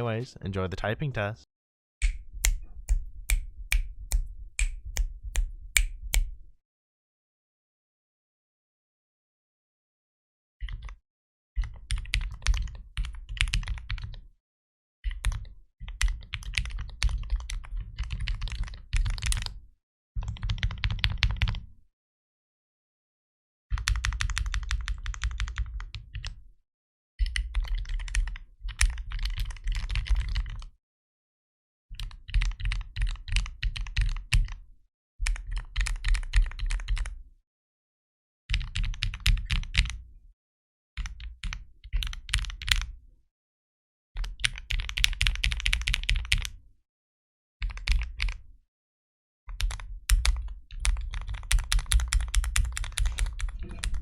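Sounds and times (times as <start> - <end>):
mechanical keyboard typing: 11.7 - 14.2, 16.0 - 19.6, 20.2 - 21.6, 23.8 - 26.3, 27.3 - 30.7, 32.0 - 34.6, 35.3 - 37.1, 38.5 - 40.0, 44.3 - 46.5, 49.6 - 54.0.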